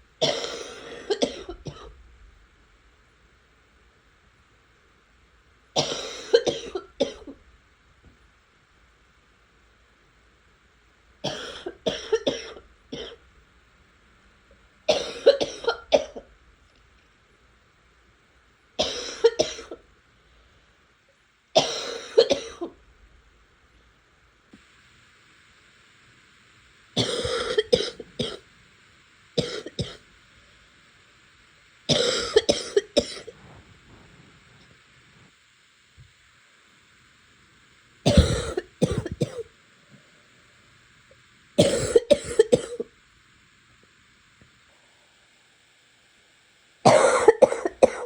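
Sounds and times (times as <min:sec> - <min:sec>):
person coughing: 0:00.2 - 0:02.0, 0:05.8 - 0:07.4, 0:11.3 - 0:13.2, 0:18.8 - 0:19.8, 0:21.6 - 0:22.8, 0:27.0 - 0:28.4, 0:29.4 - 0:30.0, 0:31.9 - 0:33.4, 0:38.1 - 0:39.5, 0:41.6 - 0:42.9, 0:46.9 - 0:48.0.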